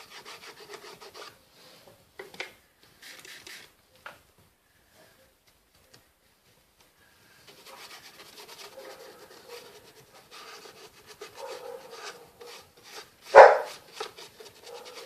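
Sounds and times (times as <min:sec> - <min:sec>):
paintbrush scrubbing on cardboard: 0:00.0 - 0:01.8, 0:07.4 - 0:15.0.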